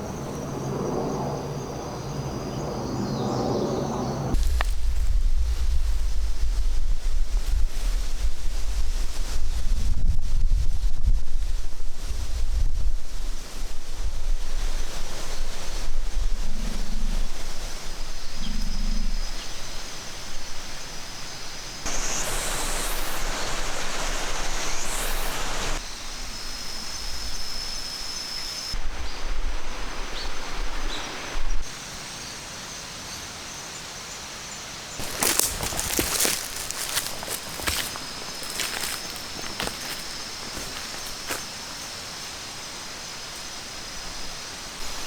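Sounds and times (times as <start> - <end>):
wind gusting on microphone: 0.0 - 19.8, 21.8 - 27.7, 35.0 - 41.5.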